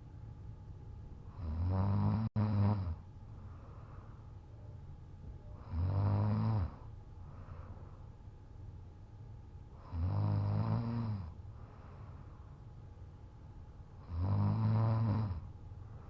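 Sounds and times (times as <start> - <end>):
quiet breathing: 1.2 - 4.8, 5.4 - 8.5, 9.7 - 16.0
man snoring loudly: 1.4 - 3.0, 5.6 - 6.8, 9.8 - 11.3, 14.0 - 15.4.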